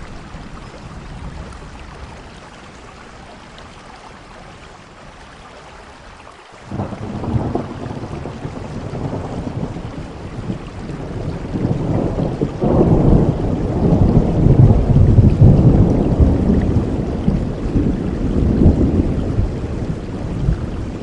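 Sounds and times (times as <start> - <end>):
rain falling: 0.0 - 21.0
deep roll of thunder: 6.7 - 21.0.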